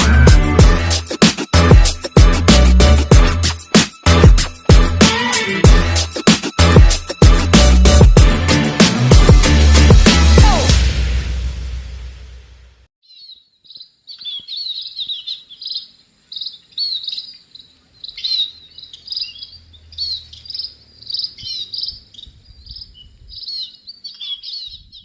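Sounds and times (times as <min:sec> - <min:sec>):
small bird chirping: 0:13.0 - 0:25.0.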